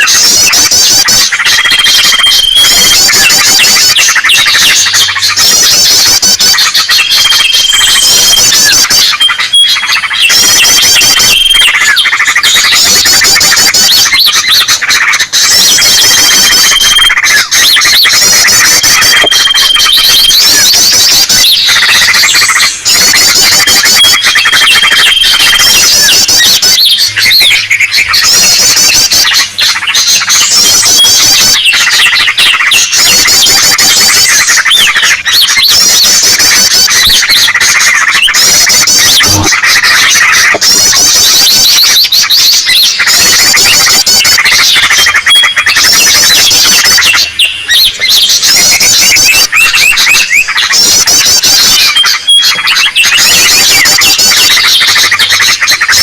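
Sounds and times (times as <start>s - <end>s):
bird squawks: 0.0s - 56.0s
long bird whistle: 0.0s - 56.0s
small birds chirping: 0.0s - 56.0s.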